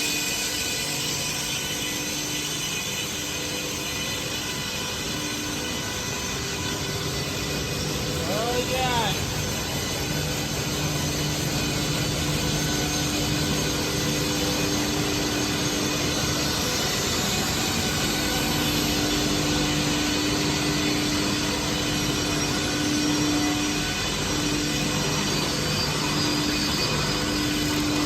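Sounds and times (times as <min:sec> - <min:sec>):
machine running with low hum: 0:09.1 - 0:28.0.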